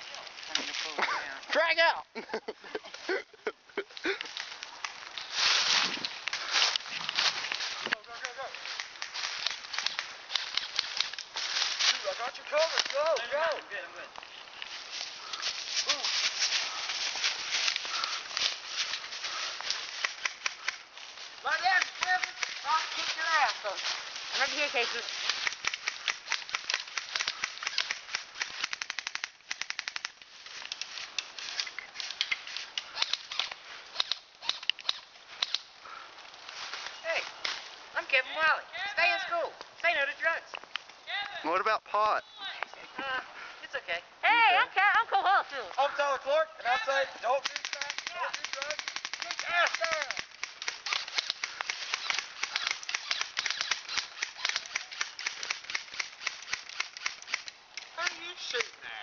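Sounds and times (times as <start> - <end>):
airsoft gun shots: 47.4 - 57.5.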